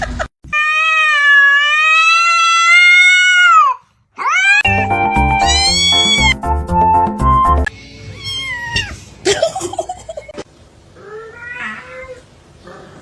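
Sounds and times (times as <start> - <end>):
music with steady beat: 4.6 - 7.7
cat meowing: 5.4 - 6.3, 7.8 - 9.0, 11.0 - 12.3.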